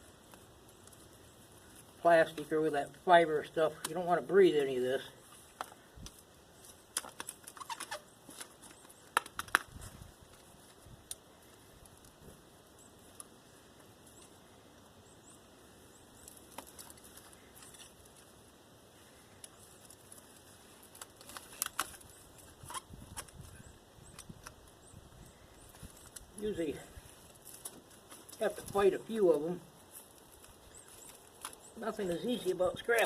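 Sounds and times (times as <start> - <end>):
copper wire clicks and scrapes: 19.2 - 26.3.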